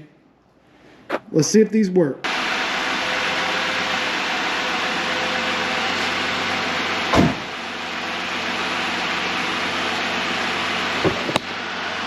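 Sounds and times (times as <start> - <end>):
loud thump: 7.1 - 7.5.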